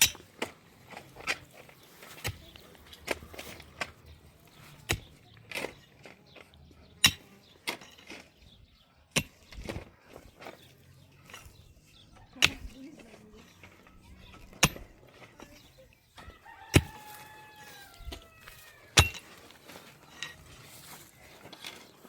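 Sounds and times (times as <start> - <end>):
rooster crowing: 16.2 - 18.9.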